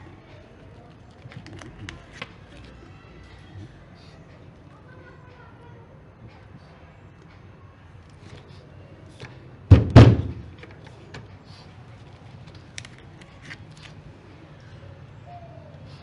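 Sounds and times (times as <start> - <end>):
heavy thumps: 9.7 - 10.7.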